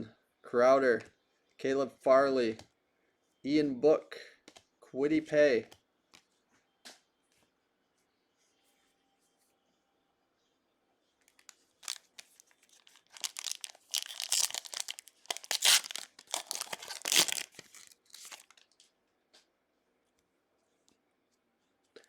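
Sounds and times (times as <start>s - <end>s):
wrapper tearing and crinkling: 11.4s - 18.6s.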